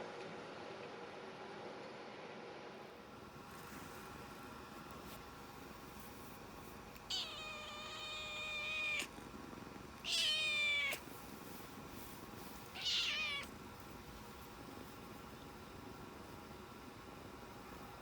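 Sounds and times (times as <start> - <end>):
cat meowing: 7.0 - 9.2, 10.0 - 11.1, 12.7 - 13.6.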